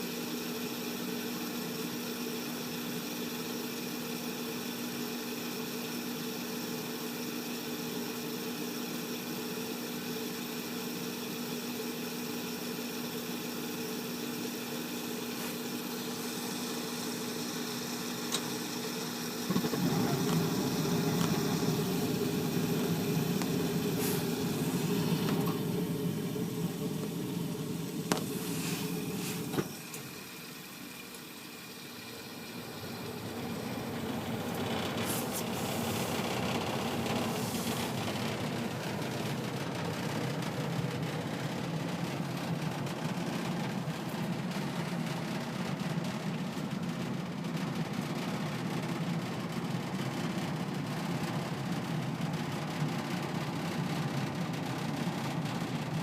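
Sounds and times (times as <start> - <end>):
gas furnace humming: 0.0 - 56.0
rush of air and burner noise: 13.6 - 30.9, 31.8 - 47.4
blower spinning up: 14.2 - 47.2.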